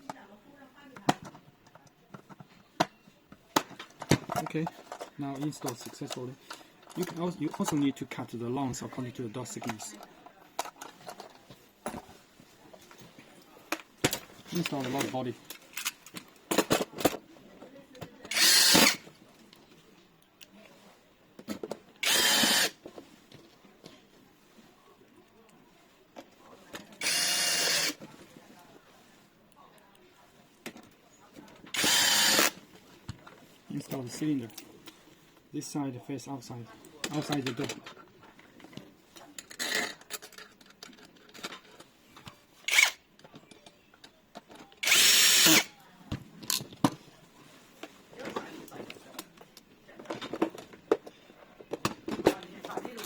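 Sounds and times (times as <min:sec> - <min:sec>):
power drill driving screw: 0:18.3 - 0:19.0, 0:22.0 - 0:22.8, 0:27.0 - 0:28.0, 0:31.7 - 0:32.6, 0:42.7 - 0:43.0, 0:44.8 - 0:45.7.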